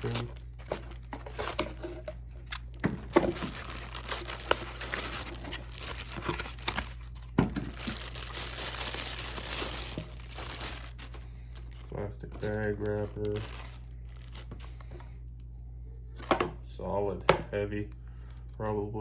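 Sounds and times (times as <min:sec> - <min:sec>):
plastic and foam crinkling: 0:00.0 - 0:15.2
steady low hum: 0:00.0 - 0:19.0.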